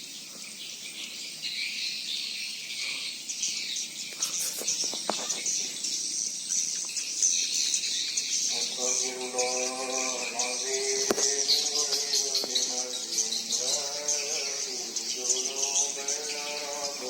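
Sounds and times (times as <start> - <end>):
small birds chirping chorus: 0.0 - 17.0.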